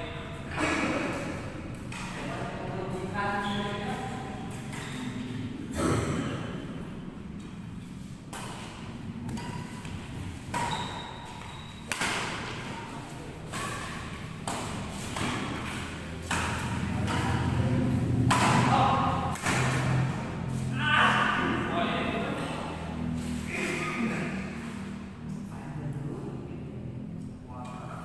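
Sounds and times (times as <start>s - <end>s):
rackets hitting shuttlecock: 1.2s - 2.3s, 8.2s - 12.8s, 13.5s - 20.6s.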